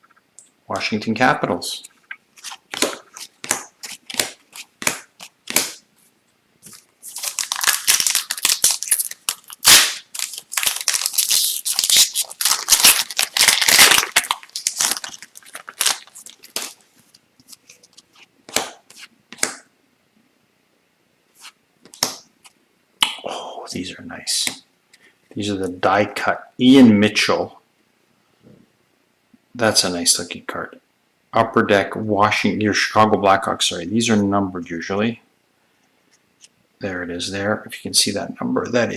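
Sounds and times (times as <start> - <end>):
cards clicking and tapping: 2.4 - 5.8, 21.8 - 22.2
foil wrapper tearing and crinkling: 6.7 - 16.8.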